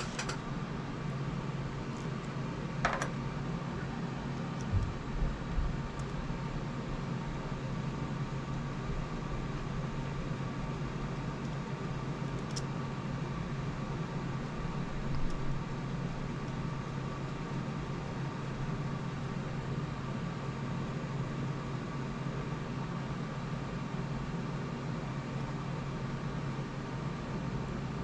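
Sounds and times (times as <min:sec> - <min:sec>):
fan humming: 0:00.0 - 0:21.4.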